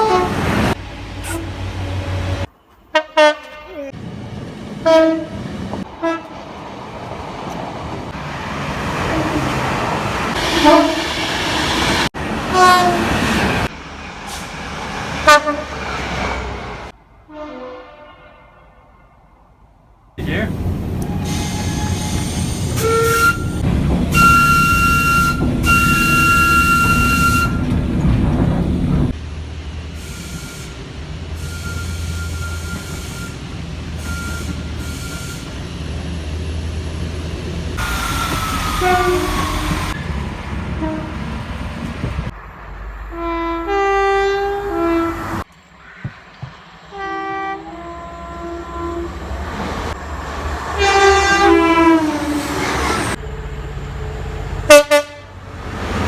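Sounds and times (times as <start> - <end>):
two-tone train horn blasts: 0.0 - 0.6, 2.9 - 3.9, 4.8 - 5.4, 6.0 - 6.3, 10.6 - 11.1, 12.5 - 13.1, 15.2 - 15.8, 17.3 - 19.2, 21.2 - 27.8, 38.5 - 40.0, 40.8 - 41.3, 43.1 - 45.4, 46.9 - 49.2, 50.8 - 52.4, 54.6 - 55.4
trains rumbling: 0.0 - 17.4, 20.2 - 56.0.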